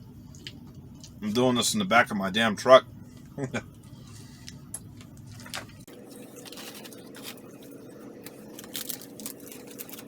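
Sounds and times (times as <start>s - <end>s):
faint steady hum: 0.0s - 10.0s
plastic packaging crinkling: 5.4s - 10.0s.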